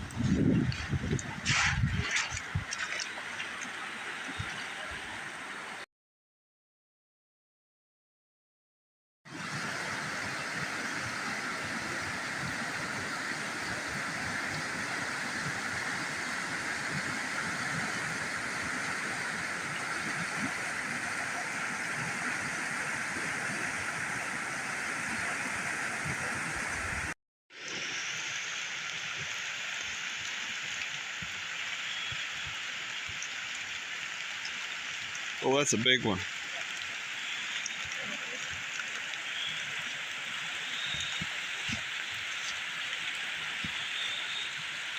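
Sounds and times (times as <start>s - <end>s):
stream water running: 0.0s - 5.8s, 9.3s - 44.9s
steady rain falling: 9.3s - 44.9s.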